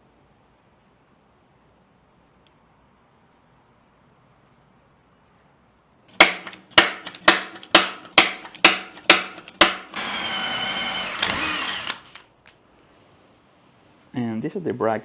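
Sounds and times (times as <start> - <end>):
hammer striking steel: 6.2 - 10.0
power drill whining: 9.6 - 12.2.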